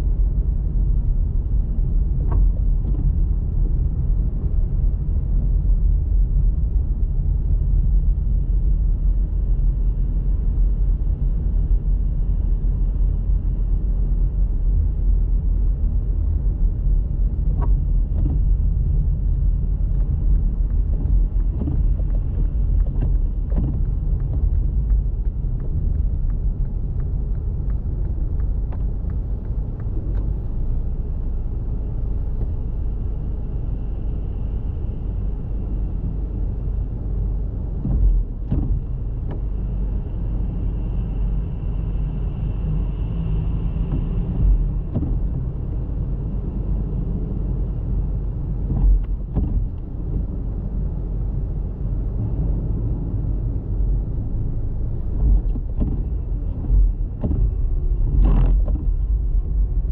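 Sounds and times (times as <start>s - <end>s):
car road and engine rumble: 0.0s - 59.9s.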